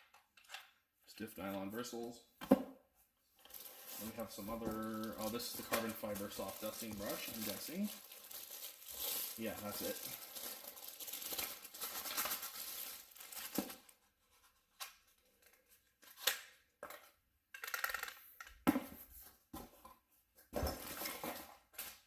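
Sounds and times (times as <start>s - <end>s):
packaging rustling and tearing: 3.4s - 14.0s.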